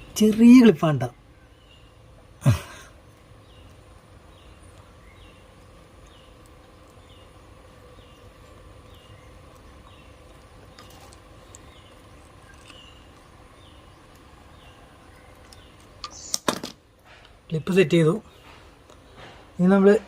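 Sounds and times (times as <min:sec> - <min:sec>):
steady low hum: 0:00.0 - 0:20.0
small bird chirping faintly: 0:03.1 - 0:16.5.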